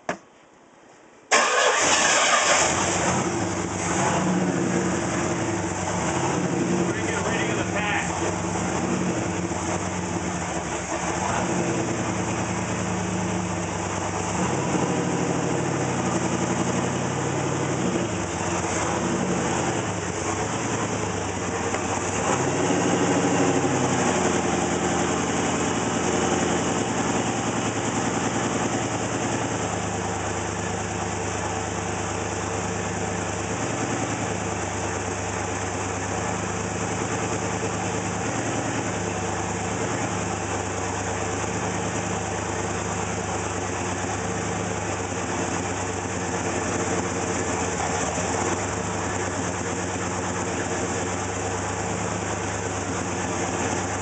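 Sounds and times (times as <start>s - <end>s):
engine idling roughly: 1.3s - 54.0s.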